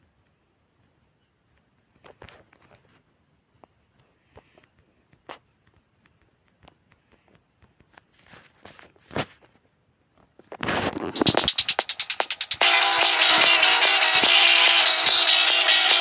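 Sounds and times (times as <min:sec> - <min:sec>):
loud music: 0:11.2 - 0:16.0.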